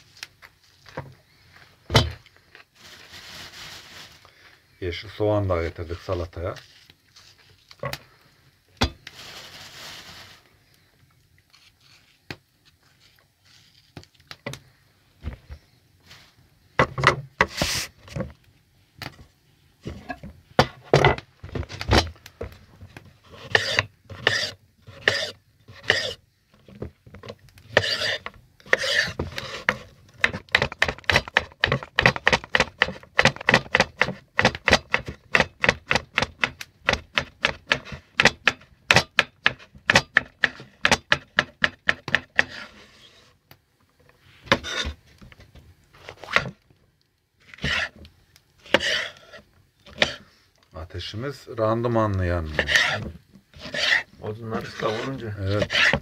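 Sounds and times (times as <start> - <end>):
knife scraping board: 17.4 - 17.9, 23.2 - 26.2, 27.7 - 36.0, 36.9 - 41.1, 42.0 - 43.4, 44.4 - 45.0, 46.0 - 46.6, 47.4 - 48.0, 48.6 - 50.3, 52.5 - 56.0
knife chopping on wooden board: 27.8 - 42.6, 54.7 - 56.0.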